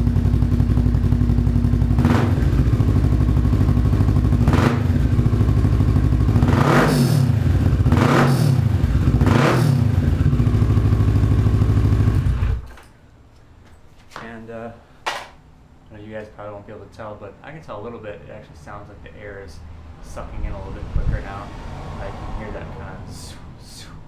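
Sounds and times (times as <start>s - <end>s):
motorcycle engine idling and revving: 0.0s - 12.8s.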